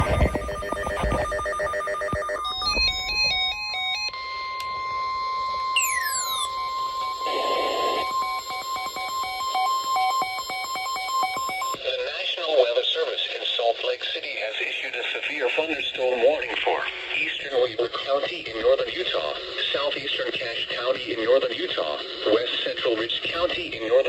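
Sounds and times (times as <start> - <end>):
long steady alert tone: 0.0 - 11.8
warbling data-burst tones: 5.7 - 11.8.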